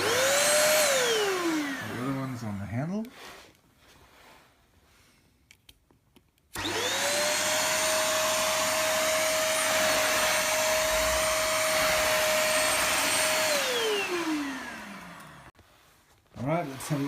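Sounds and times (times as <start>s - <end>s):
stick vacuum motor whine: 0.0s - 2.4s, 6.5s - 15.6s.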